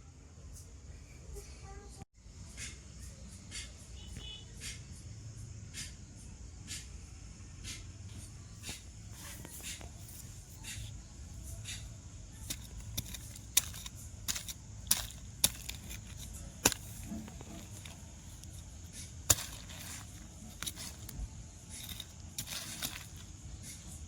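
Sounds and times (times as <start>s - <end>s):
low steady hum: 8.8s - 24.0s.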